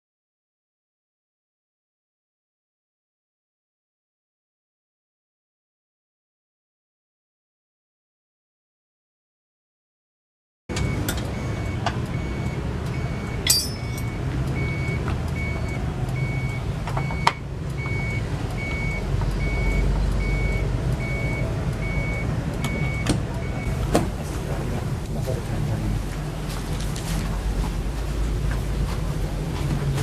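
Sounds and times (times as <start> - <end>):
reversing alarm beeping: 10.7 - 23.9
low engine rumble: 10.7 - 30.0.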